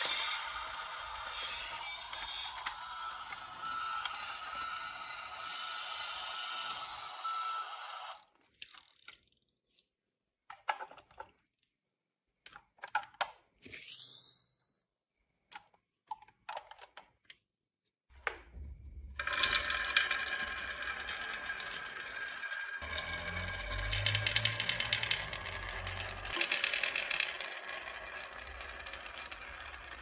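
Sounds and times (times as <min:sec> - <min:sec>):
marbles clicking on wooden run: 0:00.0 - 0:07.9, 0:19.2 - 0:30.0
marbles rattling with ringing tones: 0:00.0 - 0:08.2, 0:19.2 - 0:30.0.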